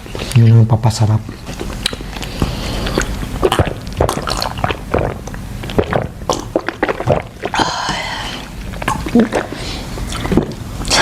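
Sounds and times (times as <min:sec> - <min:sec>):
wet chewing and lip smacking: 0:01.3 - 0:07.6.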